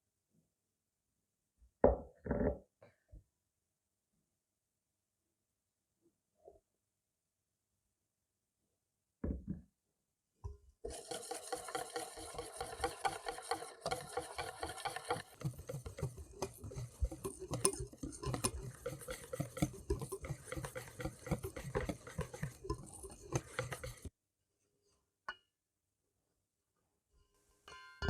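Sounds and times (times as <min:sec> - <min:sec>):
hand mixing in a bowl: 0:10.9 - 0:24.1.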